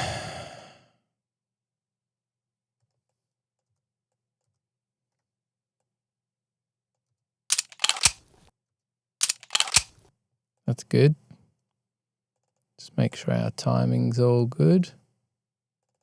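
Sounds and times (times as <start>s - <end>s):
gun metallic clicks: 7.5s - 8.4s, 9.2s - 10.0s.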